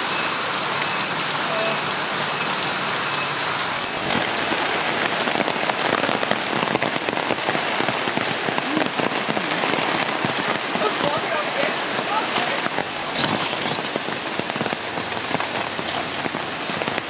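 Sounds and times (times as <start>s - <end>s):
rain pattering: 0.0s - 17.0s.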